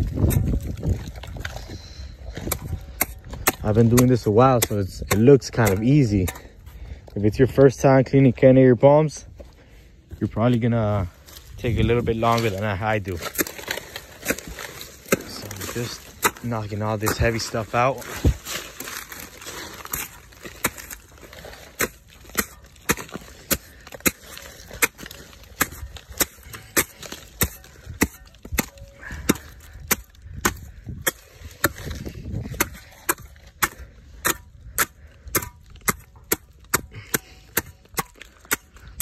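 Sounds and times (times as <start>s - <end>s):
machete chopping palm trunk: 2.2s - 6.5s, 13.2s - 39.0s.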